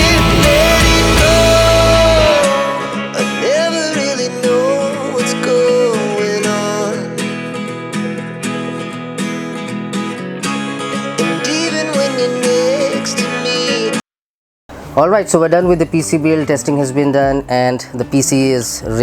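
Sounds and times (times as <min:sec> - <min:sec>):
sliding melody line: 0:00.0 - 0:05.1
loud rock song: 0:00.0 - 0:07.0
acoustic guitar background music: 0:00.0 - 0:14.0, 0:14.7 - 0:19.0.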